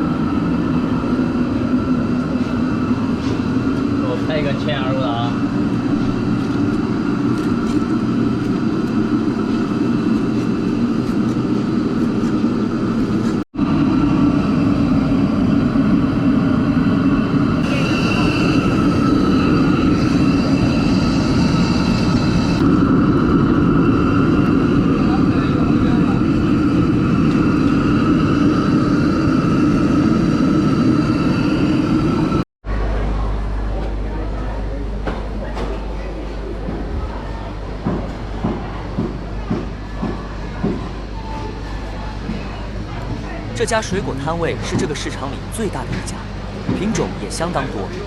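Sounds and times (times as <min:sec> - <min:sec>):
steady mechanical drone: 0:00.0 - 0:48.0
busy street market din: 0:17.6 - 0:29.9, 0:32.0 - 0:48.0.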